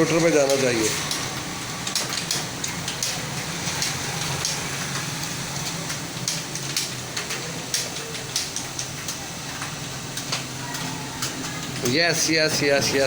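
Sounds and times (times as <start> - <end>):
steady background hum: 0.0 - 13.0
keyboard keys clicking: 5.6 - 13.0.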